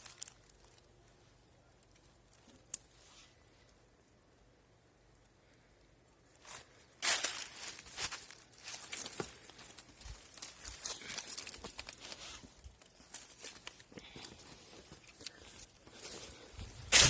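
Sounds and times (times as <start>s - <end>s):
footsteps through dry leaves: 6.4s - 13.7s, 15.6s - 17.0s.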